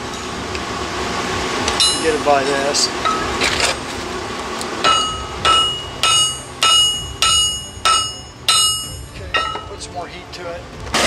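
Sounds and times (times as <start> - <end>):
hammer striking hot steel: 1.7 - 3.3, 4.8 - 9.8.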